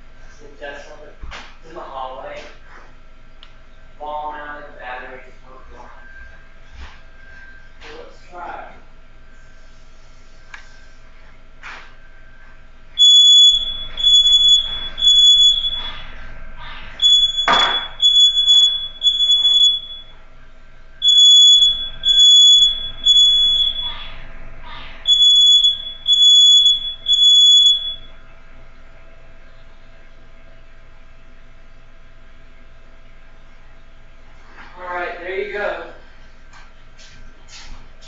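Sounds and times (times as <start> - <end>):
smoke alarm beeping: 12.9 - 16.2, 16.9 - 20.2, 21.0 - 24.2, 25.0 - 28.2.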